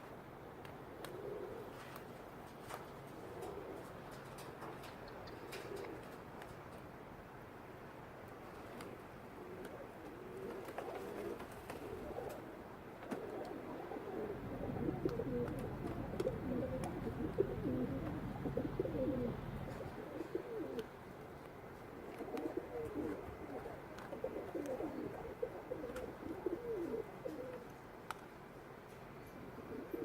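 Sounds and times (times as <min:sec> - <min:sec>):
low steady hum: 0:00.0 - 0:30.0
pigeons cooing: 0:00.9 - 0:06.3, 0:08.5 - 0:27.8, 0:29.3 - 0:30.0.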